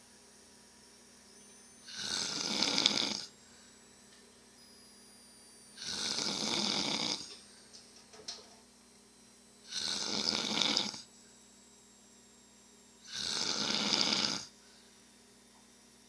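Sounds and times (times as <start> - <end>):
person snoring loudly: 1.8 - 3.3, 5.8 - 7.3, 9.7 - 11.1, 13.0 - 14.5.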